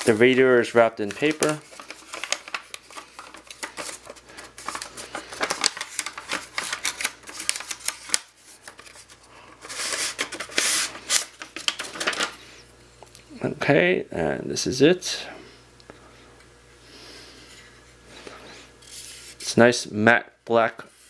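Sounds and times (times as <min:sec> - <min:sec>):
packing paper crinkling: 0:00.0 - 0:12.4.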